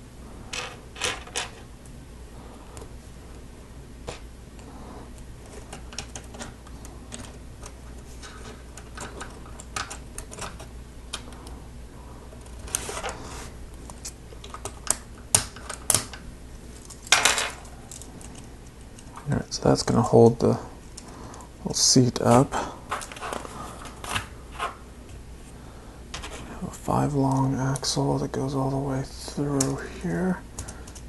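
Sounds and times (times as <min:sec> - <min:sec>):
sharp plastic snaps: 0:13.9 - 0:16.2
pieces rattling: 0:16.9 - 0:18.4.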